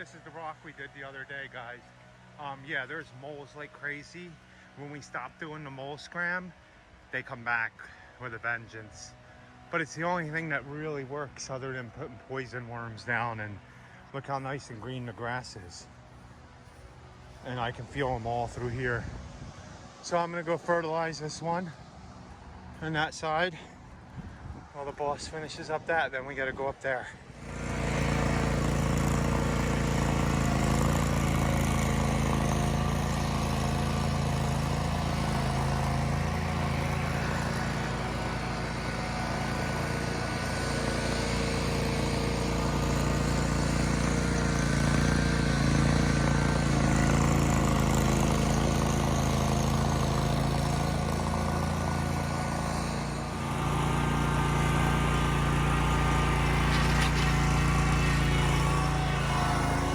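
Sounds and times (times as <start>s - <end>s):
small gasoline engine running: 27.0s - 59.9s.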